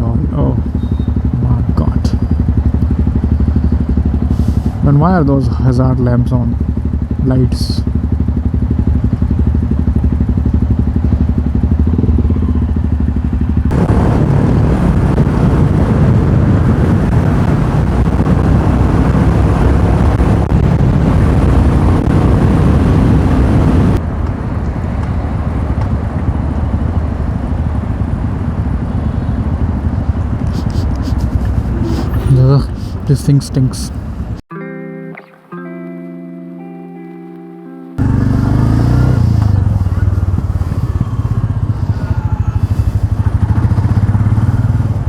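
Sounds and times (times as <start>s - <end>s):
loud rushing noise: 13.6s - 33.1s, 38.0s - 45.0s
motorcycle engine thumping: 38.0s - 44.8s.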